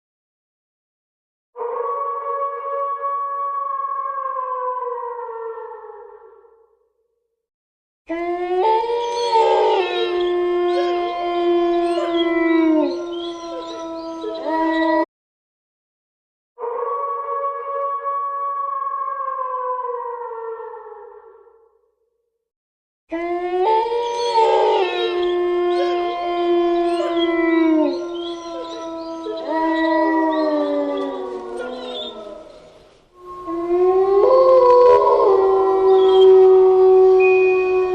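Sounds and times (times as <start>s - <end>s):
wavering howls: 8.1s - 15.1s, 23.2s - 37.9s.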